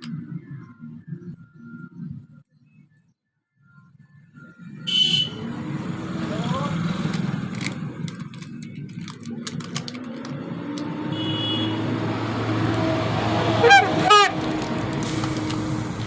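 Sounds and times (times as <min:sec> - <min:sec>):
vehicle horn blasts: 0:04.9 - 0:05.4, 0:11.1 - 0:12.0, 0:13.4 - 0:14.6
vehicle engine running: 0:05.2 - 0:16.0.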